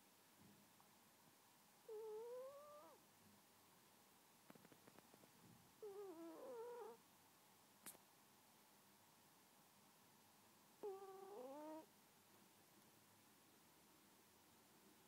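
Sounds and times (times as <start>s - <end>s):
cat snoring: 1.9s - 3.0s, 5.8s - 7.0s, 10.8s - 11.9s
faint crackle: 4.4s - 7.0s.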